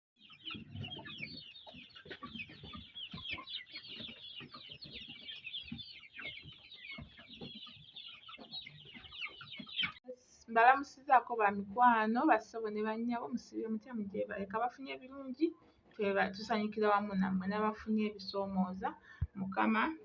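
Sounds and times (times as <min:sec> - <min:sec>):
chickens clucking: 0:00.2 - 0:10.0
chickens peeping: 0:00.2 - 0:10.0.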